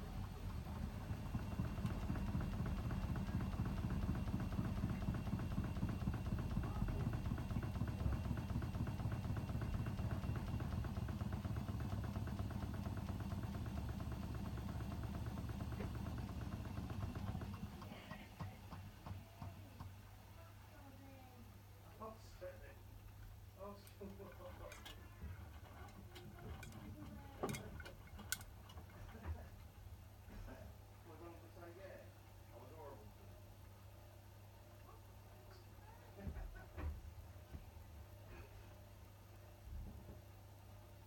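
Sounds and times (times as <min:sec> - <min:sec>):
washing machine running: 0:00.0 - 0:20.8, 0:22.8 - 0:31.2.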